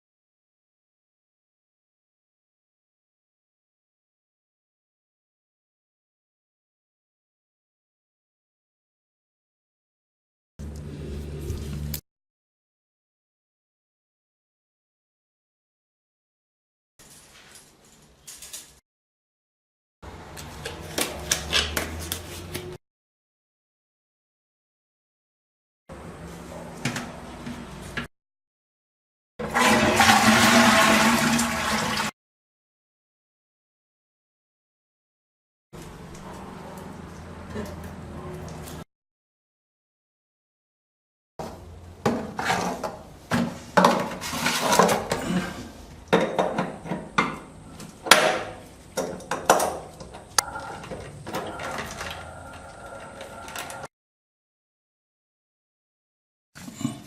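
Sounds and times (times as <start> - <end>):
toilet flushing: 29.4 - 32.1
scraping and rustling: 43.6 - 45.1.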